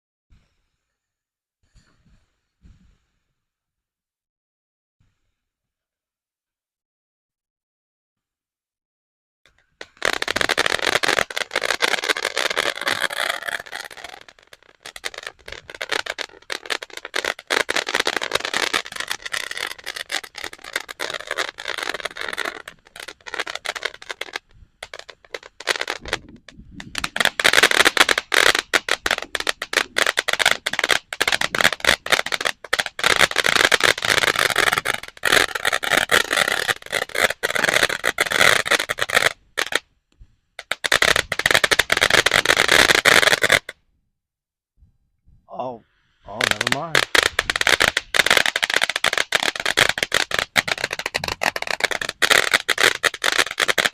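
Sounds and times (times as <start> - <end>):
fountain firework crackling: 9.5 - 39.8, 40.6 - 43.8, 46.2 - 53.9.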